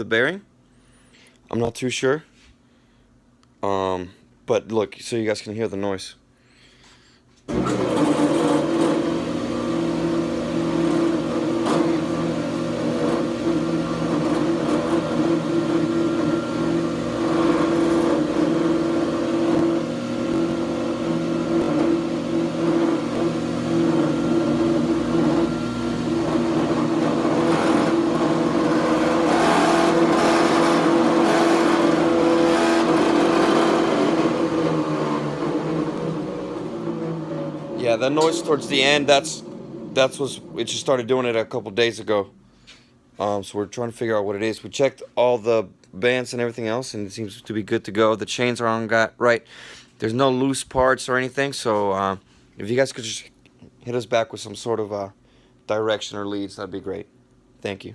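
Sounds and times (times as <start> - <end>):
jointer motor humming: 7.5 - 41.5.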